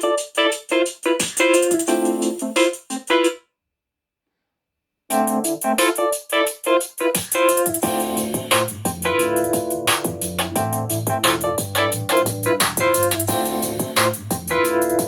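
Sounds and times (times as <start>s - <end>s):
electronic dance music on speaker: 5.1s - 15.0s.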